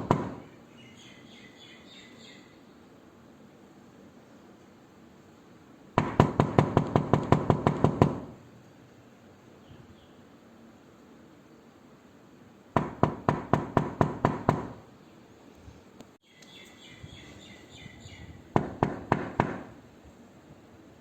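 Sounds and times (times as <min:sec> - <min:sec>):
knocking on a door: 0:00.0 - 0:00.4, 0:06.0 - 0:08.4, 0:12.8 - 0:14.8, 0:18.6 - 0:19.7.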